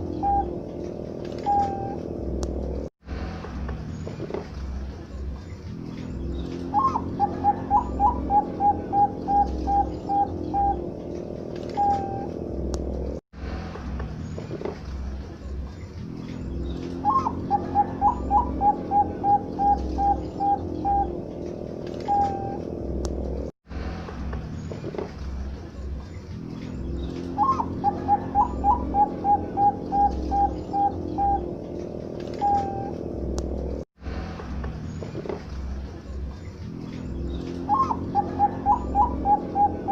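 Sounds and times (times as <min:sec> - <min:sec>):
dove cooing: 0:00.0 - 0:02.0, 0:06.7 - 0:12.4, 0:17.0 - 0:22.7, 0:27.4 - 0:33.0, 0:37.6 - 0:39.9.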